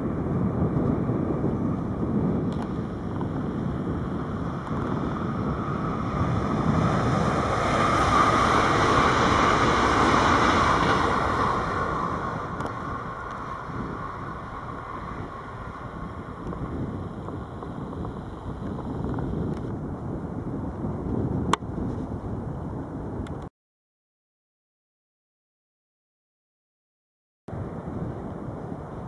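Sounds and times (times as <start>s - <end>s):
train passing: 2.7s - 18.6s.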